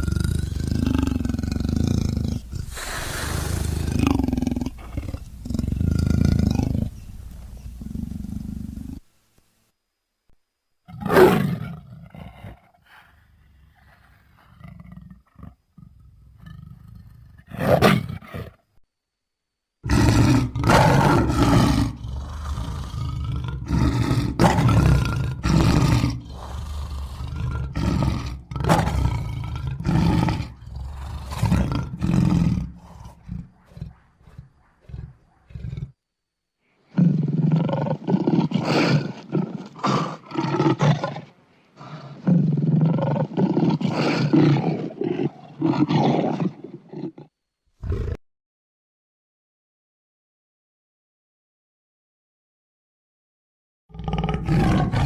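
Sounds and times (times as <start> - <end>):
lion roaring and grunting: 0.0 - 9.0, 19.8 - 36.0, 36.9 - 48.2, 53.9 - 55.0.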